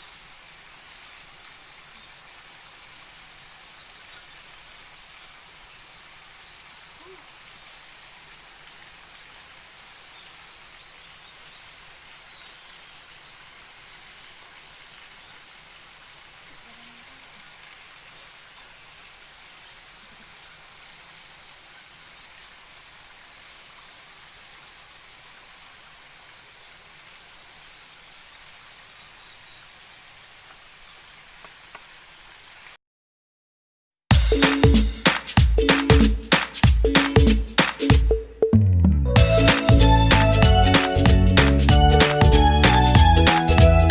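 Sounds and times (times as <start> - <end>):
forest insects chorus: 0.0 - 32.8.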